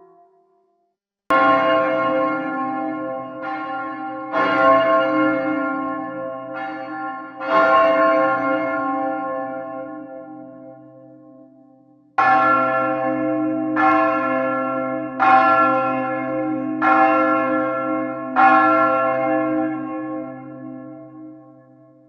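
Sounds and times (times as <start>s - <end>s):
church bell tolling: 1.3s - 22.0s.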